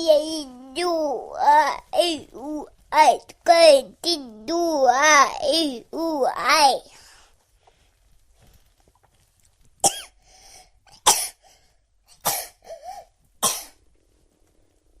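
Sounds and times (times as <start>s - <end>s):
young child coughing: 9.8s - 10.2s, 10.9s - 11.4s, 12.2s - 13.8s.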